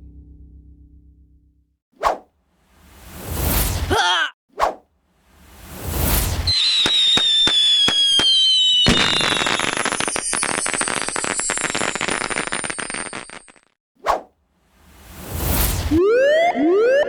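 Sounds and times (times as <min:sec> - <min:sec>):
firework whoosh: 0:02.8 - 0:03.9, 0:05.2 - 0:13.6, 0:14.8 - 0:16.0
dense firework crackling: 0:05.3 - 0:13.7
falling whistle with sharp cracks: 0:05.9 - 0:13.6.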